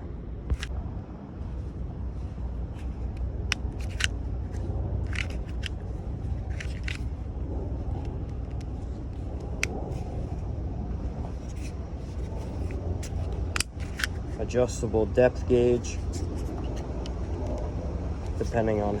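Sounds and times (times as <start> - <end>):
steady low rumble: 0.0 - 19.0
wire strippers clicking: 2.8 - 7.2, 11.4 - 14.4.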